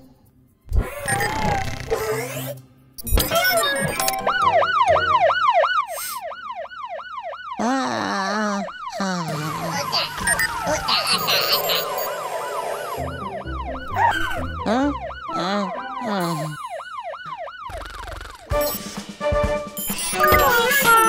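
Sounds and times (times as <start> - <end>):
background music: 3.9 - 5.6, 9.5 - 16.6, 18.4 - 21.0
cartoon fire engine siren wailing: 4.0 - 18.5.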